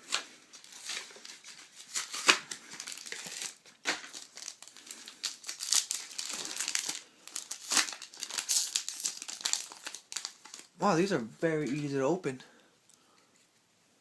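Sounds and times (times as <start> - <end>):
foil wrapper crinkling and tearing: 0.1 - 10.8.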